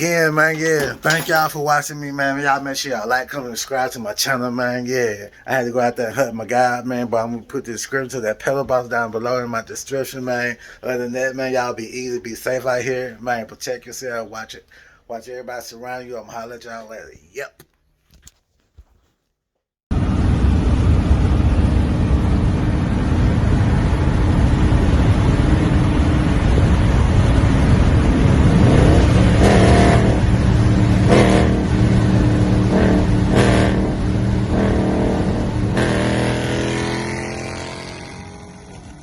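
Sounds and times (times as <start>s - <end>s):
engine rumbling and idling: 19.9s - 35.9s
engine throttle blips: 20.0s - 39.0s.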